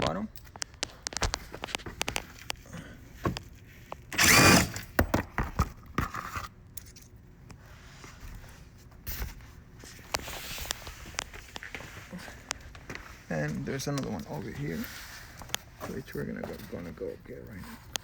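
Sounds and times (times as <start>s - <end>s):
cordless power driver spinning: 4.0s - 5.0s.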